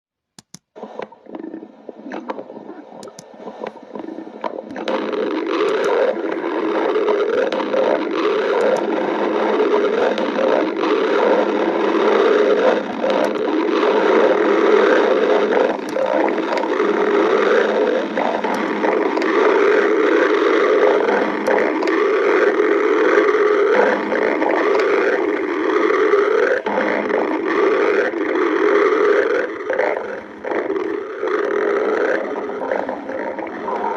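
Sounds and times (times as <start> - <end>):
stomach growling: 0.8 - 33.9.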